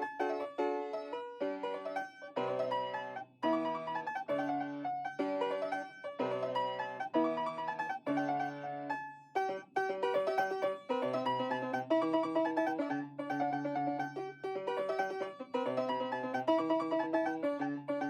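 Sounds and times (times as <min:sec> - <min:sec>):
piano music: 0:00.0 - 0:18.0.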